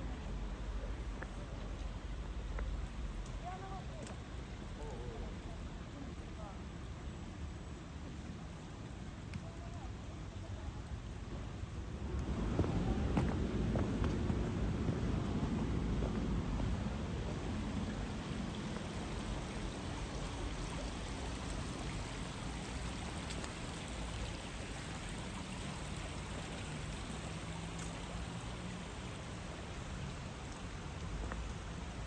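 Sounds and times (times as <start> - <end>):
running water rushing: 14.4 - 32.0.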